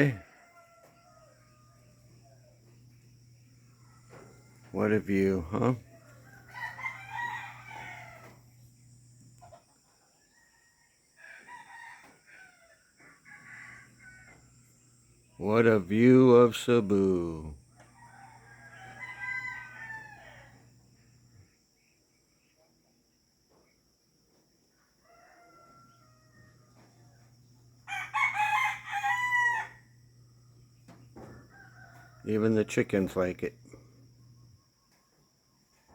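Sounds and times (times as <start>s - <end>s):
roosters crowing: 0.0s - 21.5s, 24.9s - 34.7s
steady low hum: 1.2s - 9.6s, 13.6s - 21.6s, 26.4s - 34.6s.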